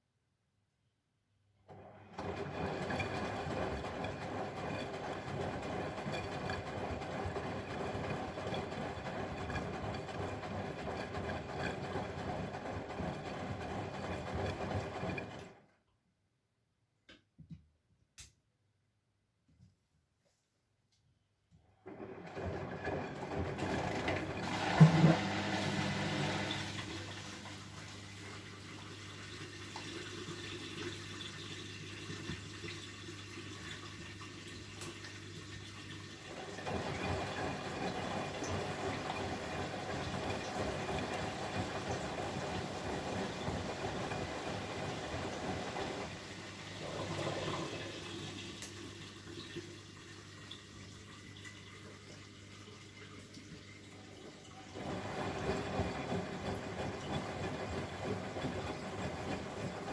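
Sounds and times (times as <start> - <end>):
washing machine hum: 0.8 - 17.8, 19.4 - 59.9
water rushing: 35.9 - 49.1.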